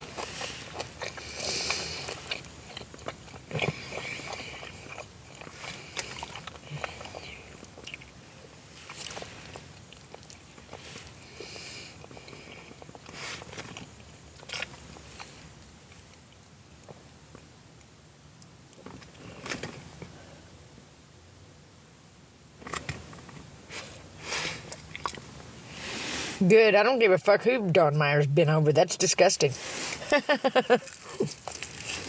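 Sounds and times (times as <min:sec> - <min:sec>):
person biting and chewing: 0:00.0 - 0:08.2, 0:08.8 - 0:16.4, 0:23.8 - 0:25.3.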